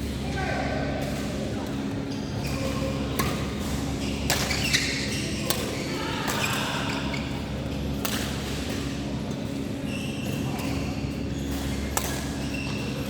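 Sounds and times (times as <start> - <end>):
rackets hitting shuttlecock: 11.5 - 12.3.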